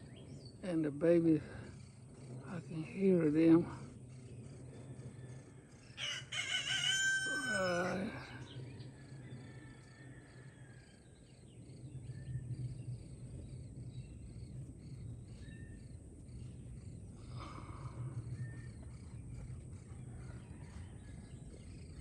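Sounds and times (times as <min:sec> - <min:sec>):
nestlings begging chirps: 0:00.0 - 0:08.7
steady low hum: 0:00.0 - 0:22.0
rooster crowing: 0:05.0 - 0:11.1, 0:20.0 - 0:21.6.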